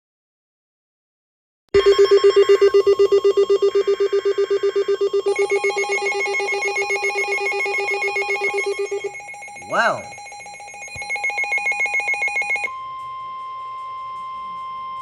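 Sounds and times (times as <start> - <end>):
pulsing alarm tone: 1.8 - 12.7
higher alert tone: 5.3 - 12.7
data-like screeching bursts: 7.0 - 10.9.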